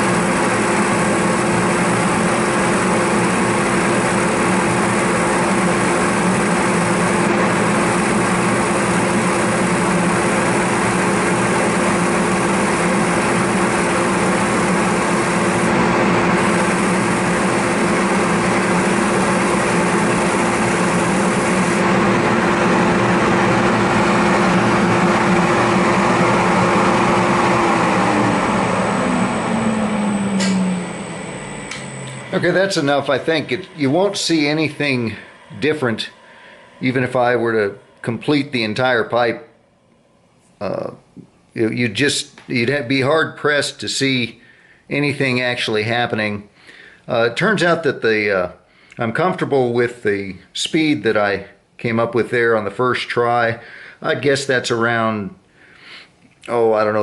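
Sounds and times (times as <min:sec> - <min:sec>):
motor spinning down: 0:00.0 - 0:39.2.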